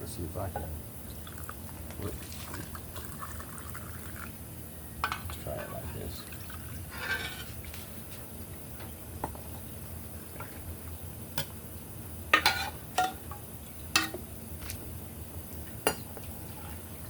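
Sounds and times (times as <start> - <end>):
glass jars clinking: 12.4 - 13.4.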